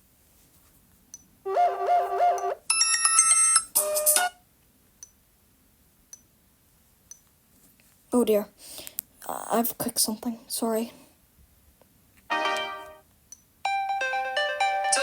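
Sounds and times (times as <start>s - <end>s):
phone ringtone snippets: 2.7s - 4.3s, 13.7s - 15.0s.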